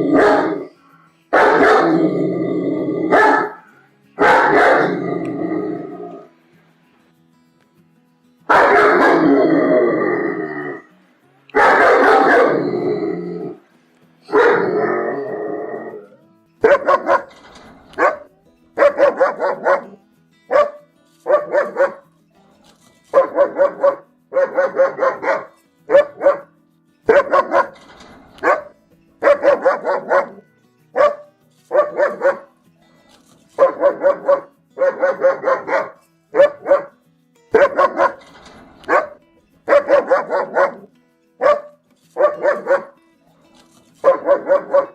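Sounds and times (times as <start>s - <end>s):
dog growling: 0.0s - 0.8s, 1.4s - 6.3s, 8.8s - 10.9s, 11.6s - 13.6s, 14.3s - 16.2s
dog barking: 0.0s - 2.0s, 3.1s - 5.1s, 8.5s - 9.5s, 11.6s - 12.8s, 14.3s - 14.9s, 16.6s - 22.0s, 23.1s - 26.5s, 27.1s - 32.5s, 33.6s - 36.9s, 37.5s - 43.0s, 44.0s - 44.9s.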